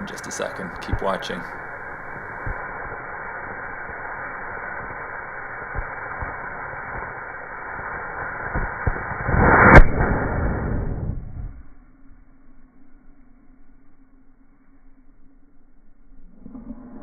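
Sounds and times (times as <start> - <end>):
rocket motor hissing: 0.0 - 11.0
ejection charge crack: 5.6 - 11.7.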